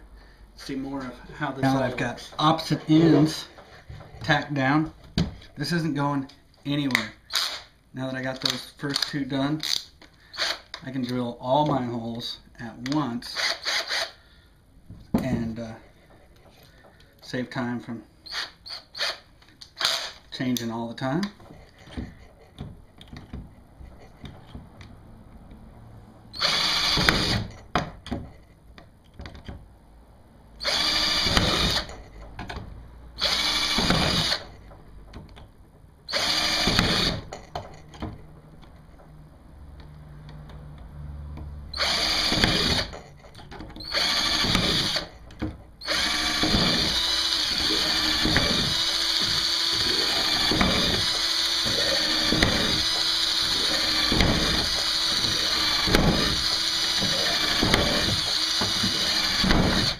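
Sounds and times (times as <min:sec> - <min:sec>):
cordless drill boring: 0:07.3 - 0:07.7, 0:10.3 - 0:10.8, 0:13.4 - 0:14.2, 0:18.3 - 0:20.2, 0:26.4 - 0:27.5, 0:30.6 - 0:32.0, 0:33.2 - 0:34.5, 0:36.1 - 0:37.3, 0:41.8 - 0:43.0, 0:43.8 - 0:45.2, 0:45.8 - 0:59.9.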